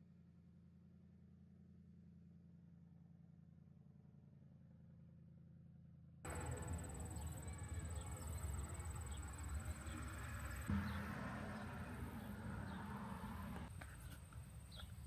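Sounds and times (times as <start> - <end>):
high-pitched insect trill: 6.3 - 10.6
low hum: 6.3 - 13.9.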